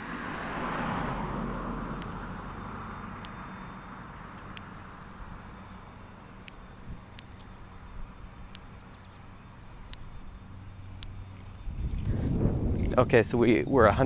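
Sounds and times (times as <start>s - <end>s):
vehicle passing: 0.0s - 7.8s, 10.3s - 14.0s
outdoor background noise: 0.0s - 14.0s
faint sharp ticks: 2.0s - 2.2s, 6.4s - 7.5s.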